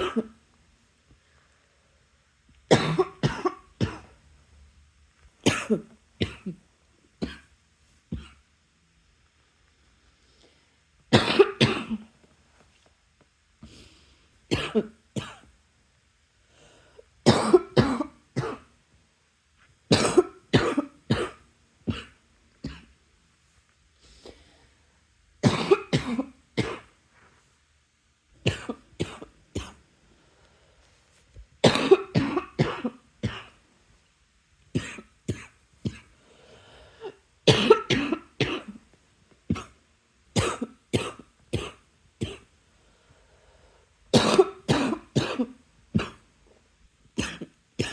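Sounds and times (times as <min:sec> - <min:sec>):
person coughing: 0:00.0 - 0:00.4, 0:02.7 - 0:04.1, 0:05.4 - 0:06.6, 0:11.1 - 0:12.1, 0:14.5 - 0:15.5, 0:17.2 - 0:18.7, 0:19.9 - 0:22.9, 0:25.4 - 0:26.9, 0:28.5 - 0:29.8, 0:31.6 - 0:33.6, 0:34.8 - 0:36.1, 0:37.0 - 0:38.8, 0:39.5 - 0:39.8, 0:40.4 - 0:42.5, 0:44.2 - 0:46.2, 0:47.2 - 0:47.9.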